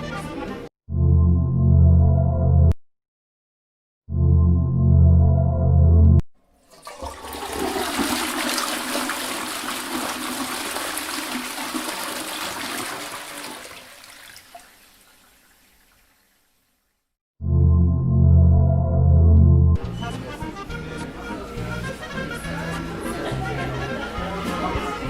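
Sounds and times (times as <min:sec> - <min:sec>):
rushing water: 0:06.7 - 0:16.8.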